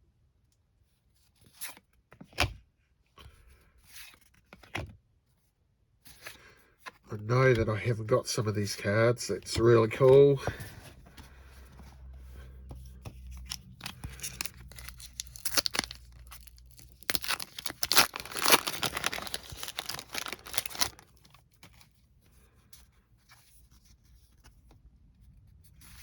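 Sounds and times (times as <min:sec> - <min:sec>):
wrapper being torn and crinkled: 0:13.4 - 0:21.4.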